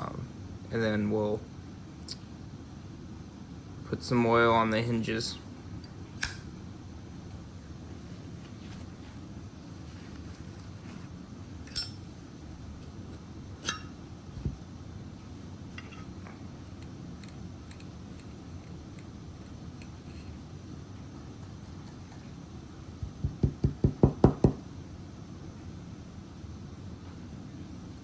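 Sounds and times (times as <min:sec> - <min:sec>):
steady low hum: 0:00.0 - 0:28.0
lighter metal clinks: 0:11.6 - 0:12.0, 0:13.6 - 0:14.0
dull knock: 0:23.0 - 0:24.6.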